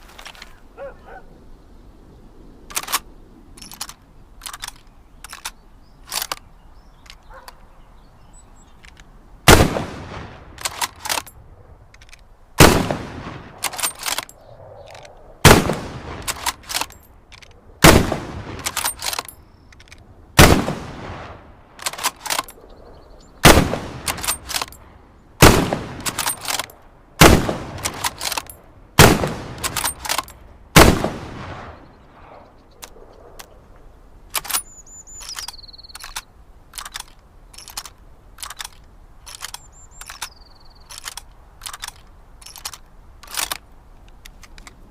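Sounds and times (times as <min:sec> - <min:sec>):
rifle bolt clicks: 0:02.7 - 0:07.6, 0:10.6 - 0:12.3, 0:13.6 - 0:15.2, 0:16.2 - 0:17.6, 0:18.6 - 0:20.1, 0:21.8 - 0:22.6, 0:24.0 - 0:24.8, 0:25.4 - 0:26.8, 0:27.7 - 0:30.4, 0:34.3 - 0:44.8
rifle shots: 0:09.5 - 0:11.3, 0:12.6 - 0:14.3, 0:15.4 - 0:17.0, 0:17.8 - 0:19.3, 0:20.4 - 0:22.5, 0:23.4 - 0:24.8, 0:25.4 - 0:31.8.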